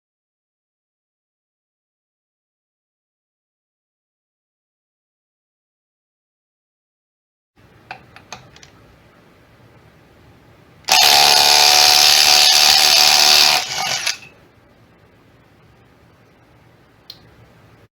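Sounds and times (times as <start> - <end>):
impact wrench running: 10.9 - 14.3.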